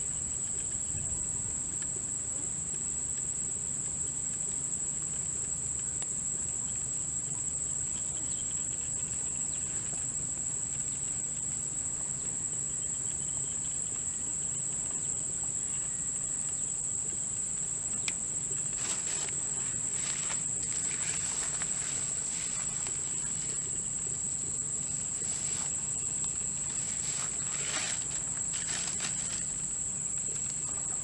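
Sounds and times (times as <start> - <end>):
insects trilling: 0.0 - 31.0
short scuffing sounds: 26.7 - 29.6.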